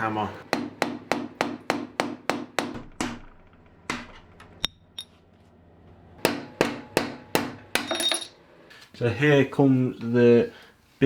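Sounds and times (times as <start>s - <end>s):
hammer striking metal: 6.2s - 8.3s.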